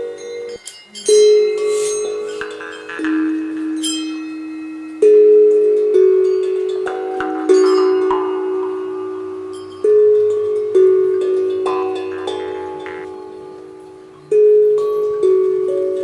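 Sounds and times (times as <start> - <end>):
bell-like electronic tones: 7.3 - 14.8.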